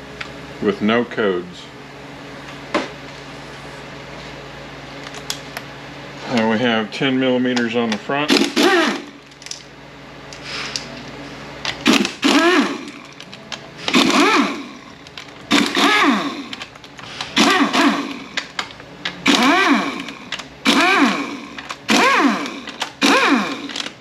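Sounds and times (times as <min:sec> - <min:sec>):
cordless power driver whirring: 0:08.3 - 0:09.6, 0:11.7 - 0:24.0.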